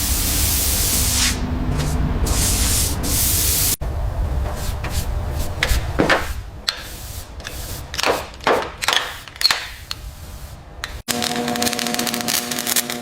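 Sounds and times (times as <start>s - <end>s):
low rumble: 0.0s - 6.7s.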